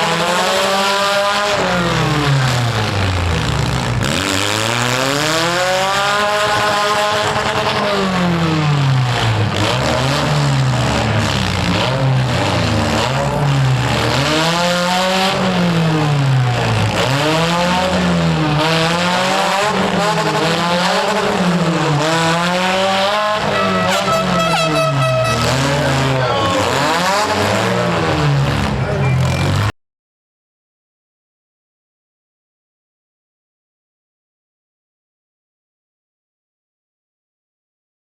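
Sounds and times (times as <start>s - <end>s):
car engine revving: 0.0s - 29.7s.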